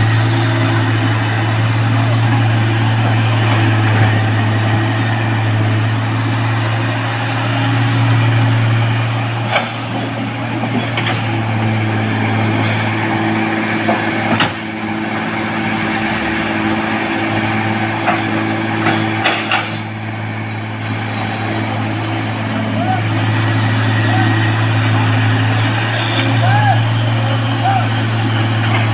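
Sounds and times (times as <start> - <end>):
heavy diesel engine running: 0.0 - 28.9
sharp metallic clanks: 18.0 - 20.0.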